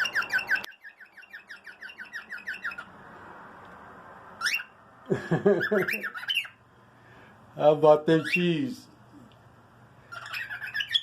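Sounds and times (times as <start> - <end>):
cockatiels chirping: 0.0 - 3.0, 4.4 - 4.8, 5.6 - 6.6, 8.0 - 8.8, 10.0 - 11.0
cockatiels squawking: 0.0 - 3.0, 4.4 - 4.8, 5.6 - 6.6, 8.0 - 8.8, 10.0 - 11.0.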